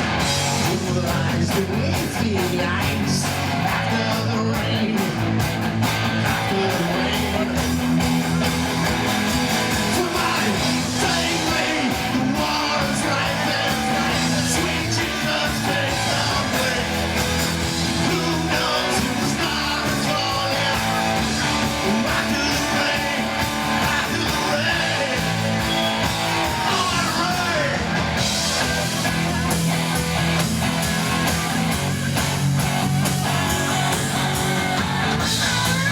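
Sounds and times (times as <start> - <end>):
rock band playing: 0.0 - 35.9
person singing: 9.8 - 25.7.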